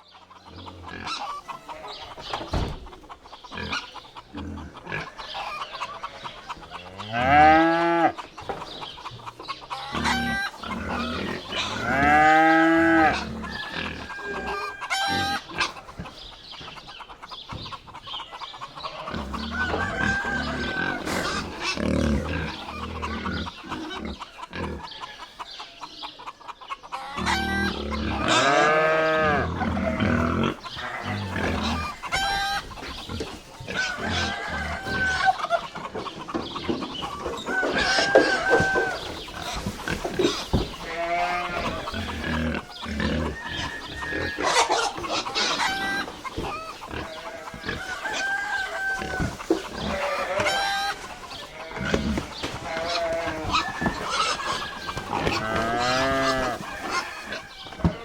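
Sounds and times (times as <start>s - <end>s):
chickens clucking: 0.0s - 58.0s
low farm animal calls: 0.0s - 58.0s
rooster crowing: 11.8s - 15.4s, 19.2s - 21.4s, 33.8s - 35.7s, 37.2s - 39.2s, 42.7s - 45.8s, 47.2s - 51.0s, 51.6s - 58.0s.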